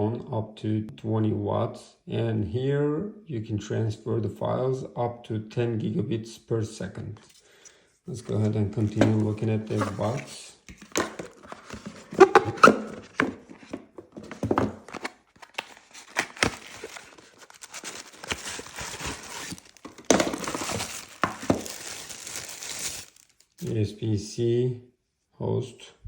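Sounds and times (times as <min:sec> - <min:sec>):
packaging rustling and crinkling: 0:08.3 - 0:23.6
packaging clicks and knocks: 0:08.8 - 0:23.3.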